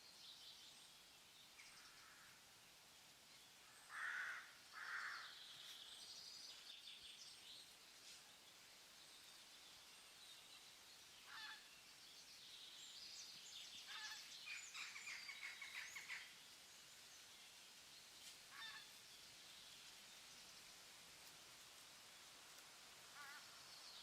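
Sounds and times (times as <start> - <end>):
wild birds calling and chirping: 3.6 - 7.4, 10.4 - 17.3, 18.4 - 20.0.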